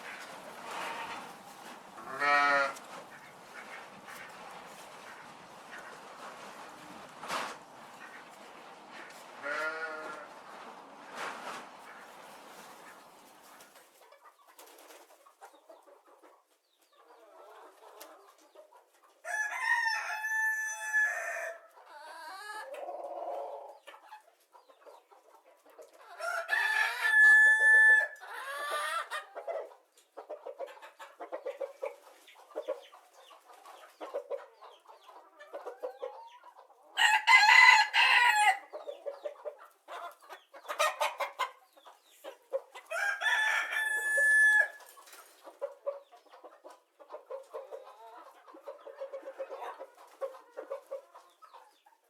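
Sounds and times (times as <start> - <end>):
chickens clucking: 0.0 - 52.0
rooster crowing: 19.3 - 21.6, 26.2 - 28.2, 37.0 - 38.6, 42.9 - 44.8.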